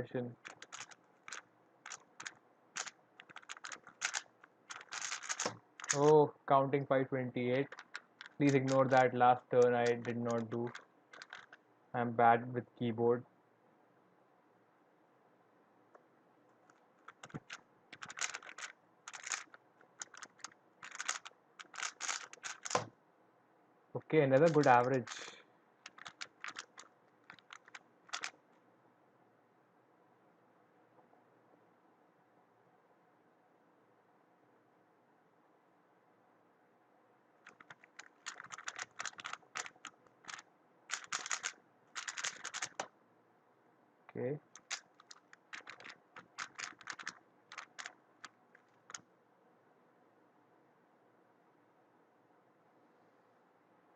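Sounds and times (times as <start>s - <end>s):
puzzle cube clicking turns: 0.3s - 6.2s, 7.5s - 11.6s, 16.7s - 22.9s, 24.4s - 28.4s, 37.4s - 42.9s, 44.5s - 49.0s.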